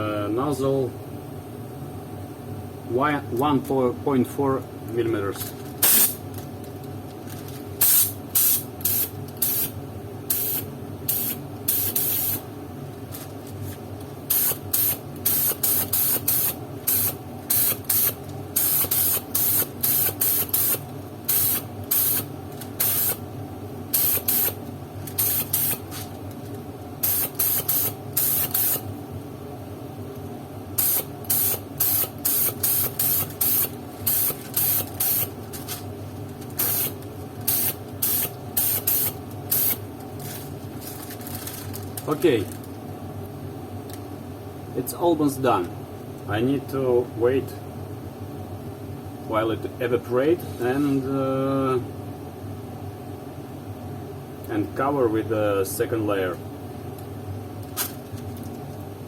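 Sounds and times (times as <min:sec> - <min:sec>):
steady low hum: 0:00.0 - 0:59.0
spray gun hissing: 0:05.8 - 0:06.2, 0:10.3 - 0:12.4, 0:14.3 - 0:23.2, 0:24.0 - 0:24.6, 0:27.0 - 0:28.8, 0:37.5 - 0:39.8.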